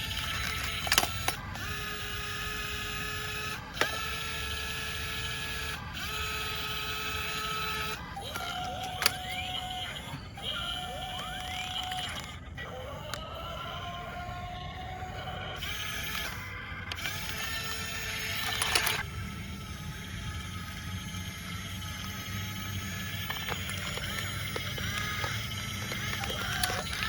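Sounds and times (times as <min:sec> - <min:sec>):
small electric motors whining: 0:00.0 - 0:27.0
sharp clicks: 0:00.1 - 0:01.7, 0:15.6 - 0:19.1, 0:22.0 - 0:27.0.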